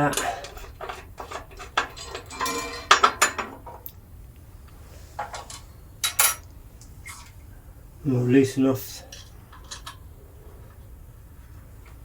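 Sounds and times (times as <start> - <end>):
metal tools clinking: 0.0 - 3.8, 5.2 - 6.5.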